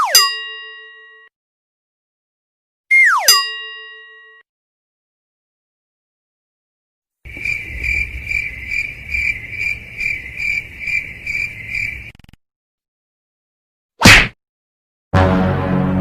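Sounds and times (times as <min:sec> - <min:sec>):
crickets chirping: 0:07.3 - 0:12.2.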